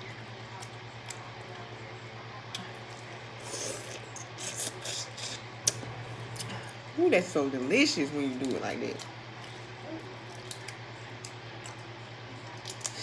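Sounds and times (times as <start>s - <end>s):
steady low hum: 0.0s - 13.0s
wet chewing and mouth sounds: 2.5s - 6.8s, 8.4s - 13.0s.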